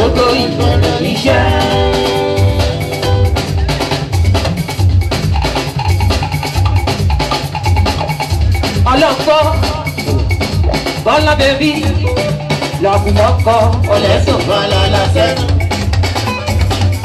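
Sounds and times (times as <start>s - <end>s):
upbeat dance music: 0.0s - 17.0s.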